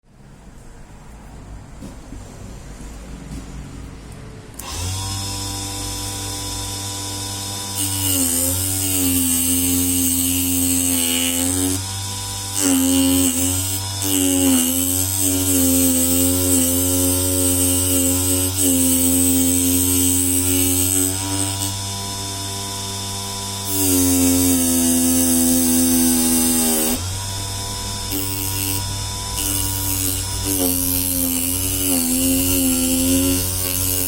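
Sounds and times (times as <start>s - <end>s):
small electric motor whining: 4.6s - 34.0s.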